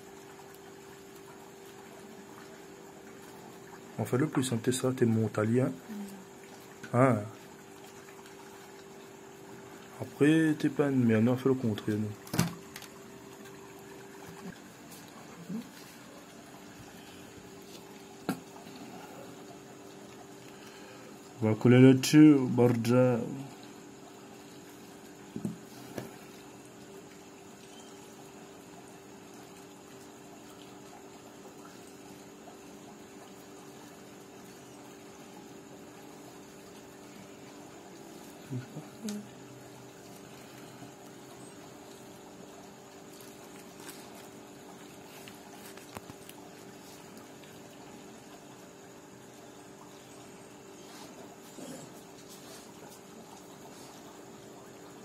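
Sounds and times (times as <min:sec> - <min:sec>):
steady background hum: 0:00.0 - 0:55.0.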